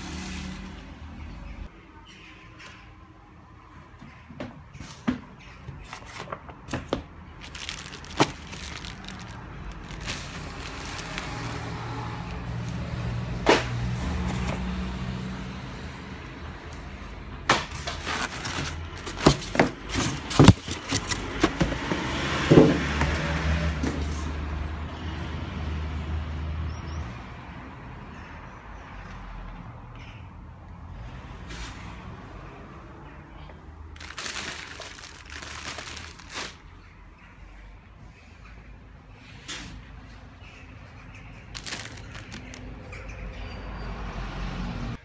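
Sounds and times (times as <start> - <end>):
rustling: 7.4 - 12.8, 17.8 - 21.3, 34.0 - 36.6, 41.6 - 42.6.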